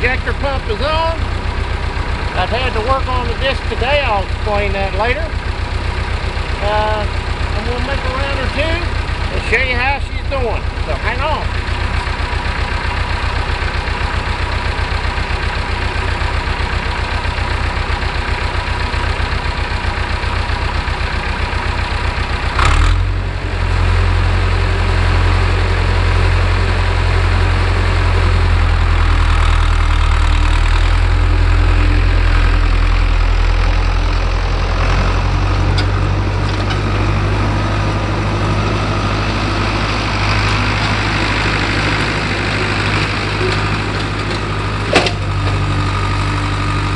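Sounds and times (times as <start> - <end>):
tractor diesel engine idling: 0.0 - 46.9
clunk: 35.7 - 36.9, 43.0 - 45.6.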